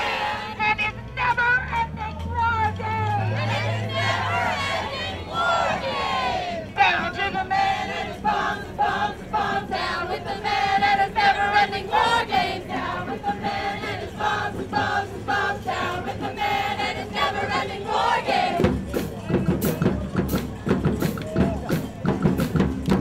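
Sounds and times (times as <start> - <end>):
crowd chanting in unison: 0.0 - 0.7, 2.5 - 20.0.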